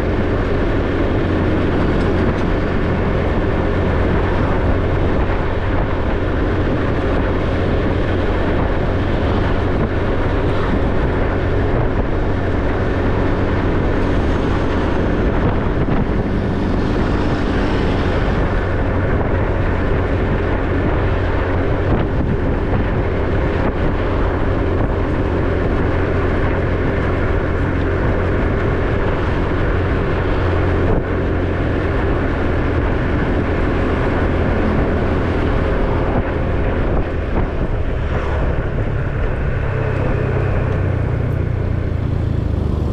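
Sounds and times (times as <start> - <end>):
motorbike engine running: 0.0 - 42.9.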